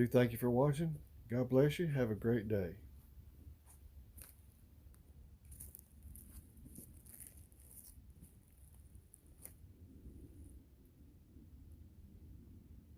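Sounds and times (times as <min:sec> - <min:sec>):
faint low hum: 0:00.0 - 0:12.9.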